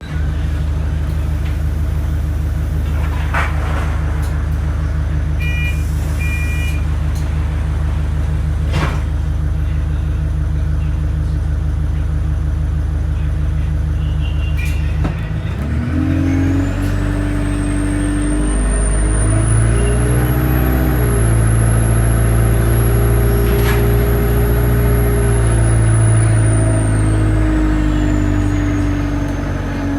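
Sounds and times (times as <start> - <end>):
turbocharged engine idling and revving: 0.0 - 29.9
short beeps: 5.4 - 6.8
turbo whistle: 5.4 - 6.8.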